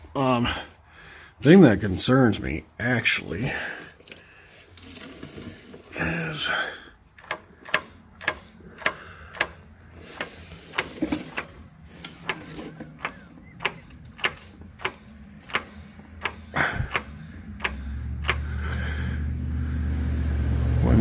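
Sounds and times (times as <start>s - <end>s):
gears clicking and clunking: 7.1s - 19.0s.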